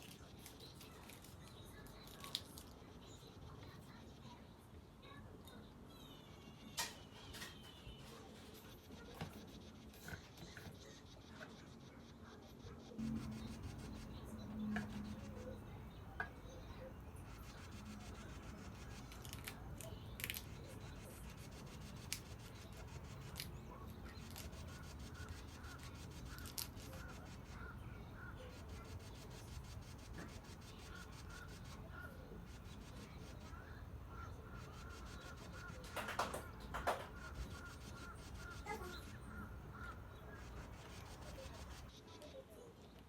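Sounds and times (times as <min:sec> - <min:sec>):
food handling ticks and rubbing: 0:00.0 - 0:04.1, 0:13.0 - 0:43.0.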